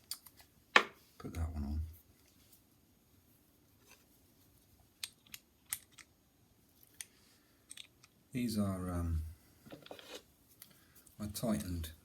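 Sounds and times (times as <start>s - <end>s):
small plastic and metal parts clicking: 5.0s - 6.1s, 6.9s - 8.2s.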